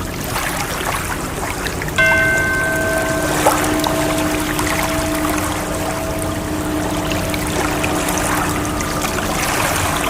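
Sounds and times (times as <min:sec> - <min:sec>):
water rushing and splashing: 0:01.7 - 0:10.0
low drone tone: 0:02.0 - 0:10.0
trickling droplets: 0:02.0 - 0:10.0.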